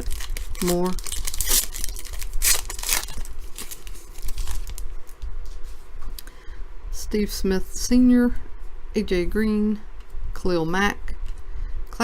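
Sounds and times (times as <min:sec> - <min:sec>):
foil wrapper tearing and crinkling: 0:00.0 - 0:04.9
steady low hum: 0:00.0 - 0:12.0.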